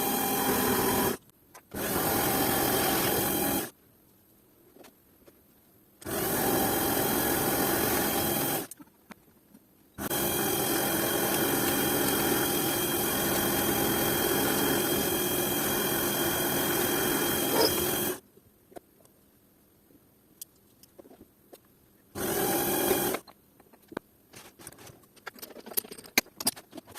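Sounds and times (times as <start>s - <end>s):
small power tool running: 0.0s - 1.2s, 1.8s - 3.7s, 6.0s - 8.7s, 10.0s - 18.2s, 22.2s - 23.2s.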